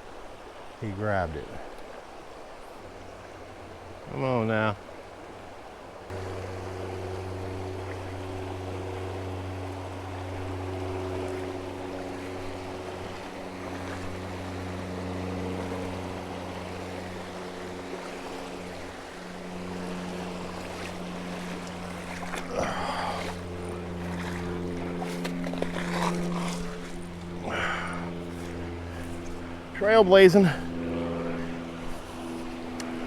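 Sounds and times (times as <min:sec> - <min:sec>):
river water rushing: 0:00.0 - 0:33.0
low hum: 0:05.9 - 0:33.0
rustles or splashes: 0:06.1 - 0:29.7.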